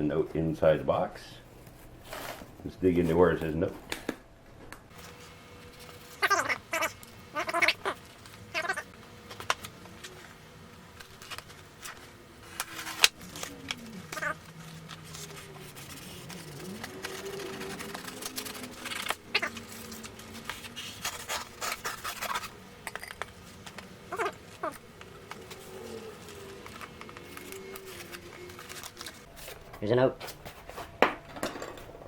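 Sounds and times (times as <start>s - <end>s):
cardboard tearing and rustling: 11.0s - 22.6s, 23.5s - 29.6s.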